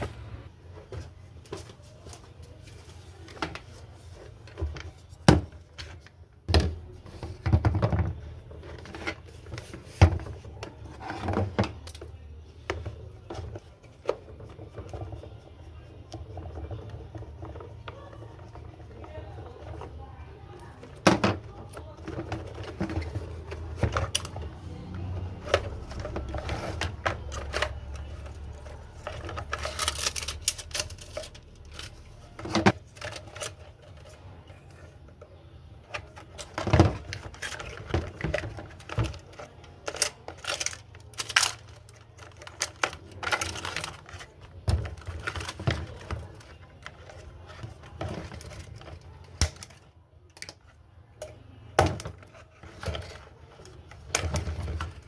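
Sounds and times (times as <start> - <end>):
plastic and metal parts clicking: 21.0 - 34.2, 35.9 - 55.0.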